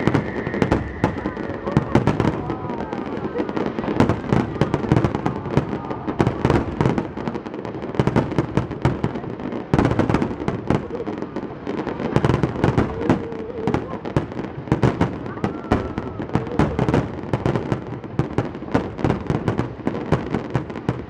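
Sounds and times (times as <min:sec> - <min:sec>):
fireworks booms and crackling: 0:00.0 - 0:21.0.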